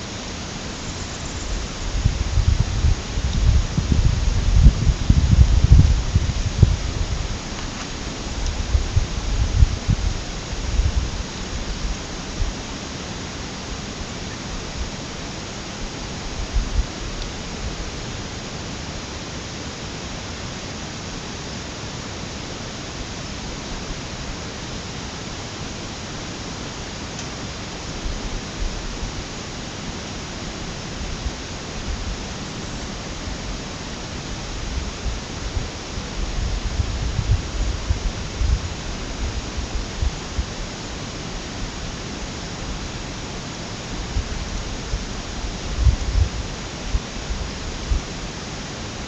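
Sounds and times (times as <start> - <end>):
steady rushing hiss: 0.0 - 49.0
wind buffeting microphone: 1.3 - 12.6, 34.3 - 40.8, 43.8 - 48.2
low rumble: 1.4 - 11.8.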